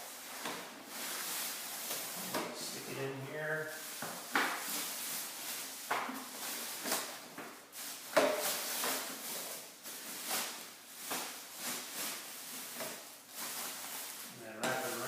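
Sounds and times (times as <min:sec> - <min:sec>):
plastic bag rustling: 0:00.0 - 0:15.0.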